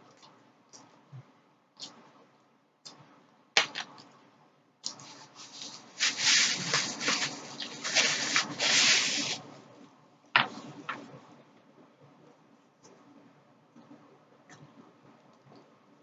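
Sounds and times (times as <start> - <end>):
food packaging rustling: 5.0 - 9.4.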